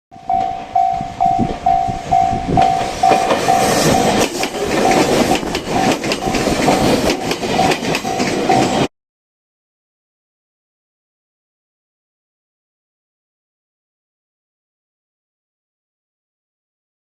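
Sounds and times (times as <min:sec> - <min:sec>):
level-crossing warning bell: 0:00.1 - 0:08.9
train wheels clacking on rails: 0:00.3 - 0:08.9.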